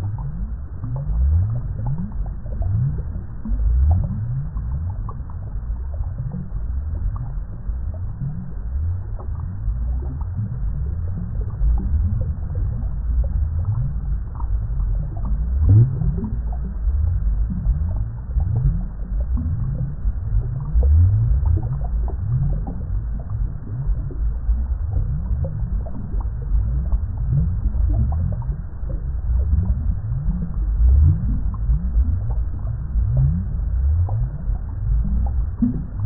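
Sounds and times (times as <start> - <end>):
water bubbling: 0.0 - 36.0.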